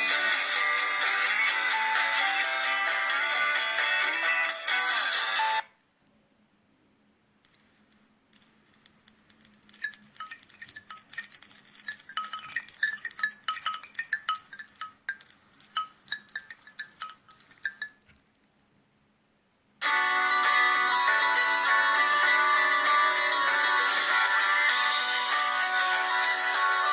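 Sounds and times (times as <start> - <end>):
phone ringtone chiming notes: 7.5 - 18.1, 19.8 - 26.9.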